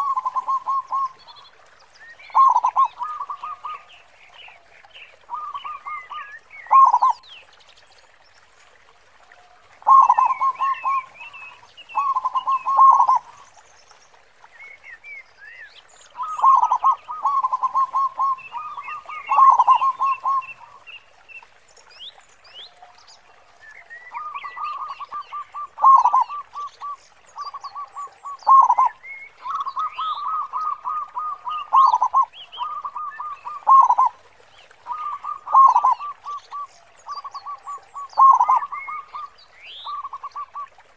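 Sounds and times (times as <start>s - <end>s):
dove cooing: 5.3s - 7.2s, 9.8s - 11.3s, 12.0s - 13.4s, 16.2s - 20.7s, 24.2s - 26.4s, 27.5s - 34.2s, 34.9s - 39.2s.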